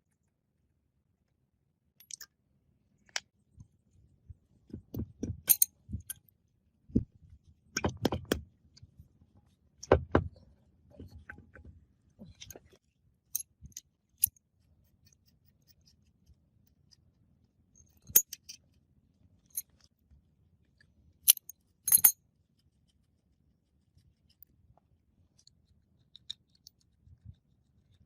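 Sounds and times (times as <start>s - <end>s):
metallic clicks and clinks of tools: 5.4s - 6.2s, 21.3s - 22.2s.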